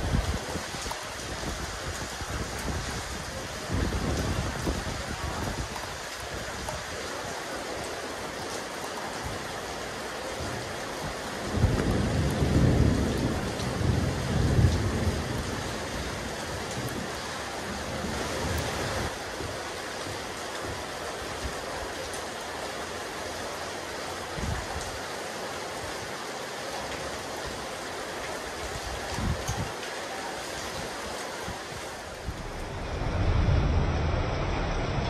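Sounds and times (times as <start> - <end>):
steady rain on a roof: 0.0 - 35.0
deep low rumble: 32.1 - 35.0.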